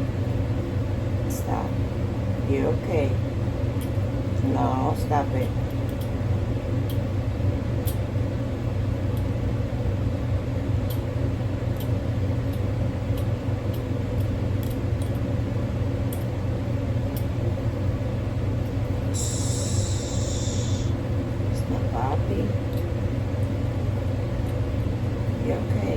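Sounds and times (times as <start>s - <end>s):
low machine hum: 0.0s - 25.9s
high-pitched whine: 19.1s - 21.0s.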